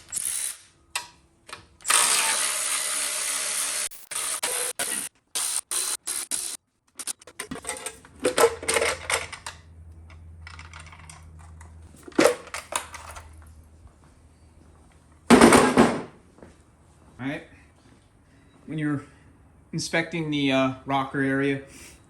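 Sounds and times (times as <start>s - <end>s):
metal clinks and clatter: 7.2s - 11.9s.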